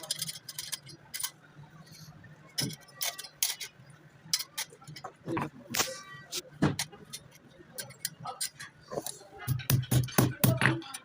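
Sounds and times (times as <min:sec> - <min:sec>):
metal tools clicking and clinking: 0:00.0 - 0:01.4, 0:02.5 - 0:05.2, 0:06.8 - 0:08.8.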